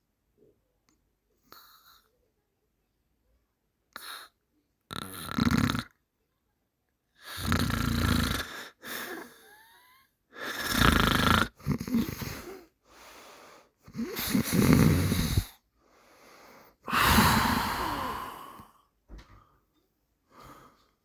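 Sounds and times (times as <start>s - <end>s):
loud snoring: 4.9s - 5.9s, 7.2s - 8.8s, 10.4s - 12.6s, 13.9s - 15.6s, 16.9s - 18.6s.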